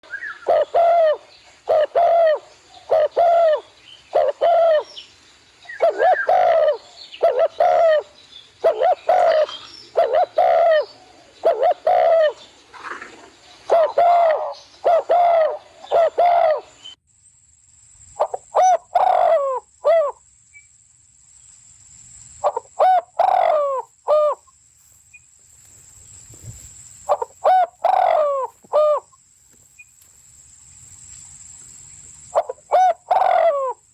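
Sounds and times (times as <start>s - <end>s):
bird harsh calls: 5.7s - 17.0s, 22.4s - 24.5s, 25.7s - 30.0s, 32.3s - 33.9s.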